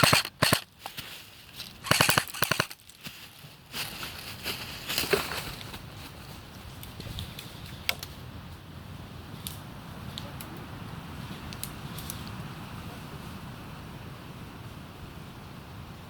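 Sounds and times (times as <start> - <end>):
sharp clicks: 0.0 - 0.7, 1.8 - 2.8.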